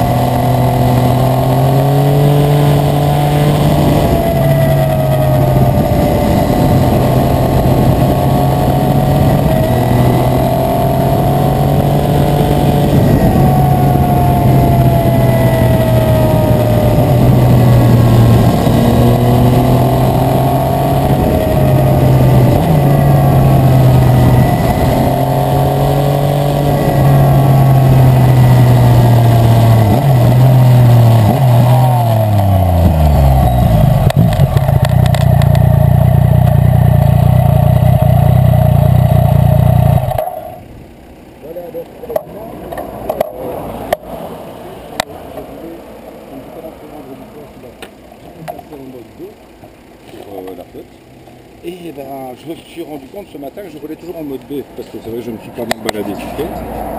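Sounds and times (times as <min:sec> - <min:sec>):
motorcycle engine revving: 0:00.0 - 0:44.3, 0:44.9 - 0:56.9.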